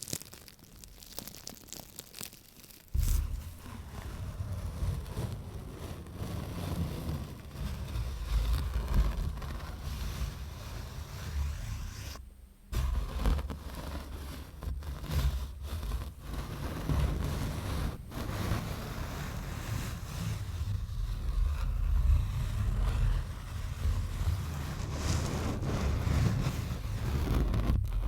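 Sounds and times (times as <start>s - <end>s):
scratching and rubbing on an object: 0.0s - 28.0s
heavy low rumble: 3.0s - 6.2s, 22.0s - 28.0s.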